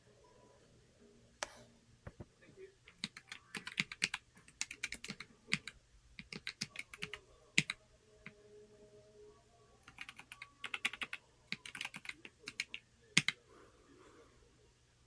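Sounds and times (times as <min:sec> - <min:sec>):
mechanical keyboard typing: 0:02.9 - 0:07.8, 0:09.8 - 0:13.4.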